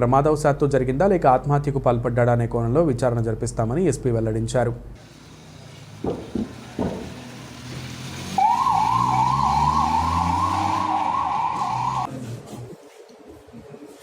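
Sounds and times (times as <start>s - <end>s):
vehicle engine hum: 5.0s - 12.1s
siren yelping: 8.4s - 12.1s.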